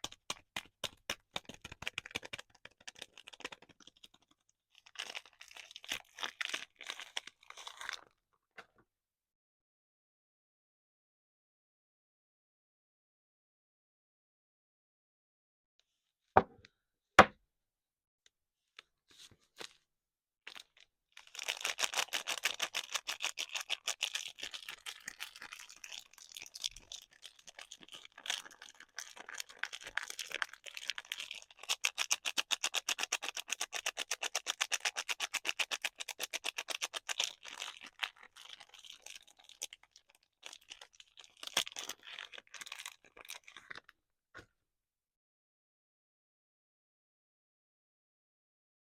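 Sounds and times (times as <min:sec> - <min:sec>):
wrapping crackling and tearing: 0:00.0 - 0:08.1, 0:20.5 - 0:43.8.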